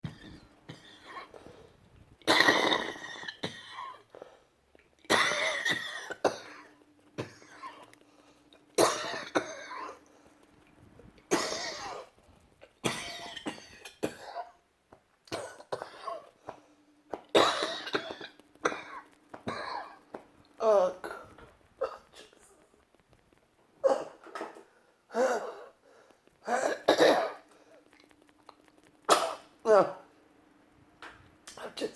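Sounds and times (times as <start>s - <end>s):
woman coughing hard: 2.3s - 4.0s, 5.1s - 7.9s, 8.8s - 10.0s, 11.3s - 12.1s, 12.8s - 14.6s, 15.3s - 16.3s, 17.3s - 20.0s, 26.4s - 27.5s, 29.1s - 30.0s.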